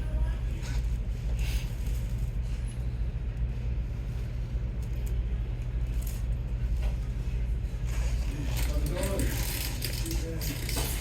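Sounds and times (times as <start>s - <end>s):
low machine hum: 0.0s - 11.0s.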